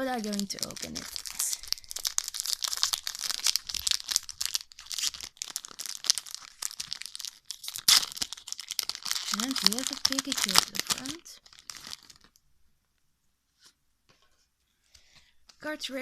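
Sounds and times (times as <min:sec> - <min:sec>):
foil wrapper tearing and crinkling: 0:00.0 - 0:12.4.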